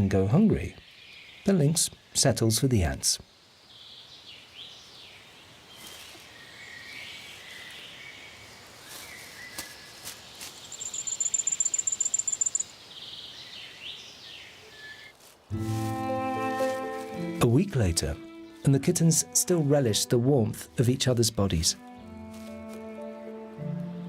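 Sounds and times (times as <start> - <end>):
small birds chirping: 3.3 - 15.6
rapid high bird trill: 10.6 - 12.8.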